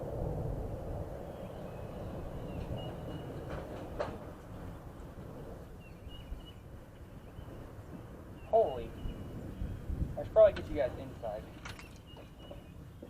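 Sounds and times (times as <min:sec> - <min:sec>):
distant thunder rumbling: 0:00.0 - 0:13.0.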